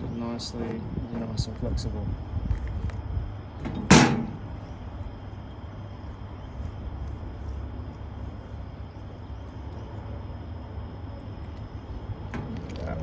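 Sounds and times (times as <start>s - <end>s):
low background hum: 0.0s - 13.0s
loud clunk: 3.6s - 4.6s.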